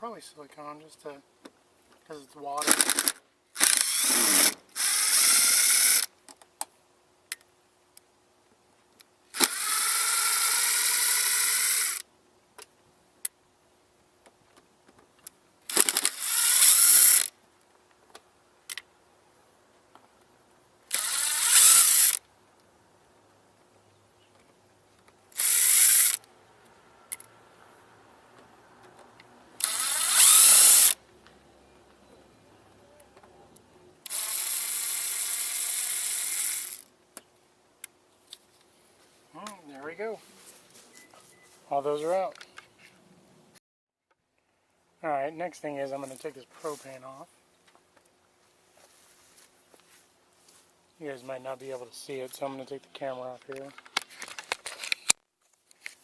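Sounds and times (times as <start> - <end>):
power drill running in bursts: 2.8 - 6.1, 29.6 - 31.0.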